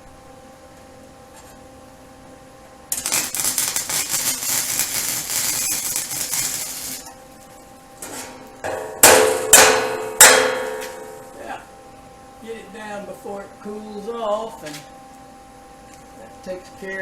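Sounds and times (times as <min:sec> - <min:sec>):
welding arc crackling: 0:02.9 - 0:07.1, 0:08.8 - 0:11.5.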